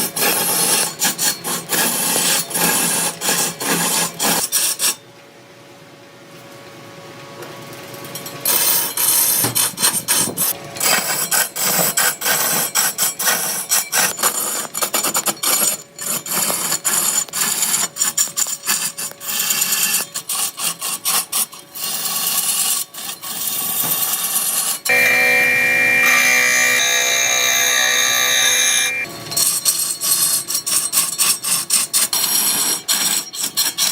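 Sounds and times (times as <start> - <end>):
tool scraping wood: 0.0 - 5.0, 8.5 - 33.9
steady tool whine: 22.9 - 29.2.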